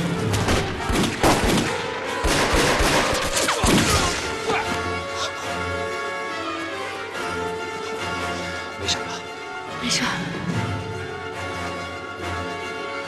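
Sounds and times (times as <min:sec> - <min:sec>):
dramatic score music: 0:00.0 - 0:13.0
rapid gunfire: 0:00.5 - 0:04.1.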